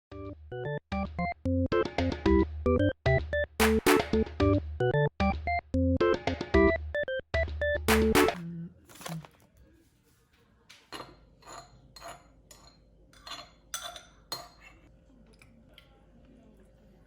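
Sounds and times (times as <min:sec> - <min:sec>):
utensils clinking against dishware: 0:10.9 - 0:14.9.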